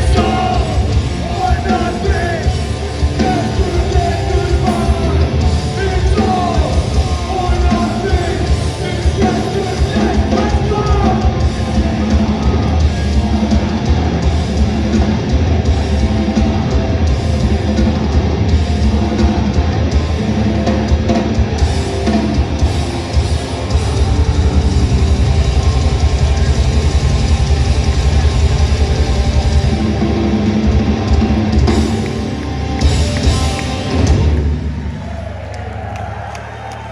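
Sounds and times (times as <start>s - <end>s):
yelled vocals: 0.0s - 14.2s
distorted guitars: 0.0s - 35.4s
drums: 0.0s - 36.9s.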